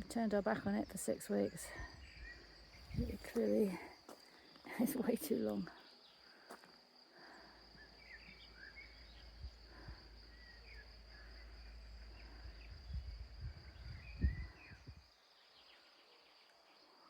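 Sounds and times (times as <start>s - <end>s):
bird chirps: 0.0s - 4.5s, 7.7s - 16.5s
insect trill: 0.0s - 17.0s.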